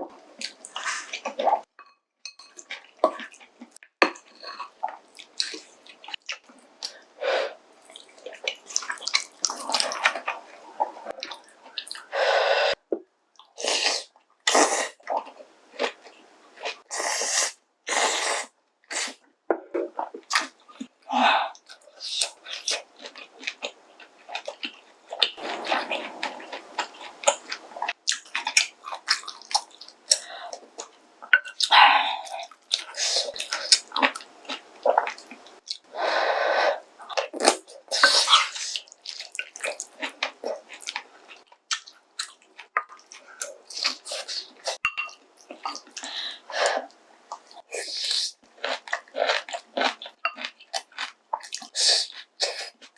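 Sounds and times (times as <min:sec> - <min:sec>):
chewing: 0:07.8 - 0:12.1, 0:21.5 - 0:35.9, 0:37.0 - 0:52.9
slurping noodles: 0:25.4 - 0:28.0.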